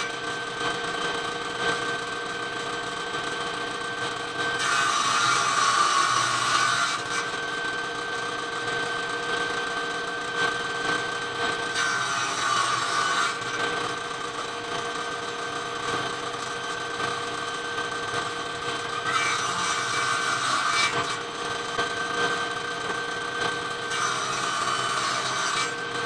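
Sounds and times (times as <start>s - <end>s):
circular saw cutting wood: 4.5s - 8.2s, 11.0s - 26.0s.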